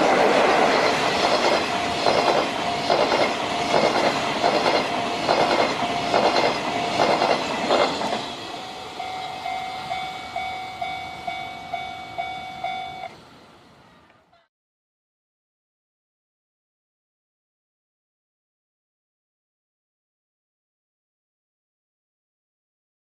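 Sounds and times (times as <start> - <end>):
wheels clattering over rail joints: 0.0 - 11.3
level crossing alarm ringing: 1.3 - 7.6, 8.4 - 13.2.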